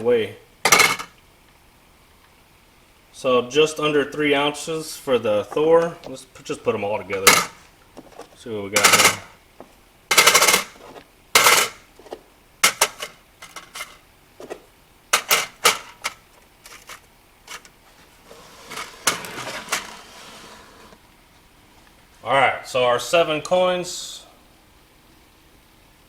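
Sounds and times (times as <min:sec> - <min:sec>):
metal coins clinking: 0:00.7 - 0:01.1, 0:07.2 - 0:07.6, 0:08.8 - 0:09.4, 0:10.1 - 0:11.8, 0:12.6 - 0:14.0, 0:15.2 - 0:17.7.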